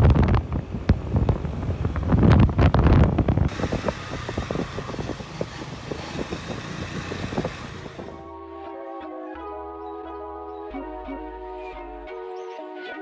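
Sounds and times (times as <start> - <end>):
wind buffeting microphone: 0.0 - 8.2
traffic hiss: 0.8 - 8.2.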